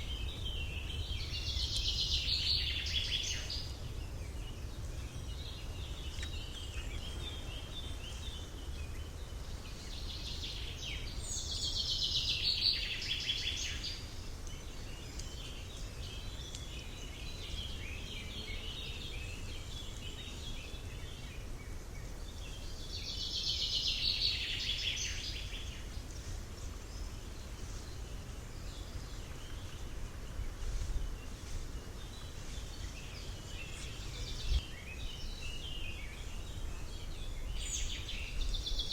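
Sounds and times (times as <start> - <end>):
birds chirping and singing: 0.0 - 38.9.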